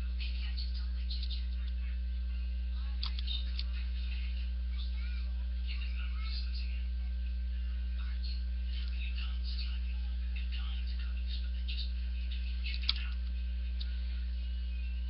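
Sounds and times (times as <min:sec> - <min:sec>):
low electrical mains hum: 0:00.0 - 0:15.0.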